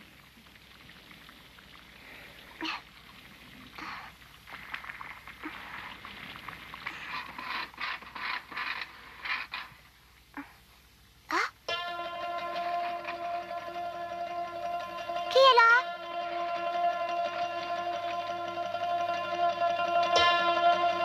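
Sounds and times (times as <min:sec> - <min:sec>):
creaking and rustling: 0:00.4 - 0:10.8.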